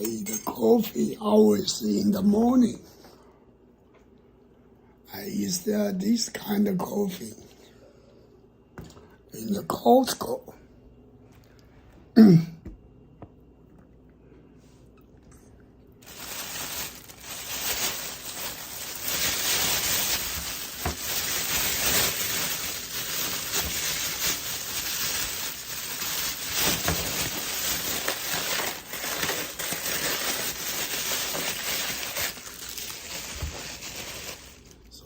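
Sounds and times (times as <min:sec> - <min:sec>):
crinkling and crushing crackles: 0:15.2 - 0:35.0.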